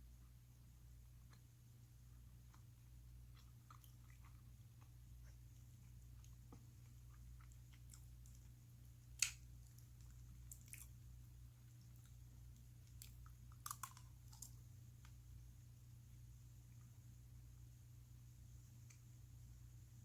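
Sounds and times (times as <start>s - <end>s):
chewing: 2.1s - 15.2s.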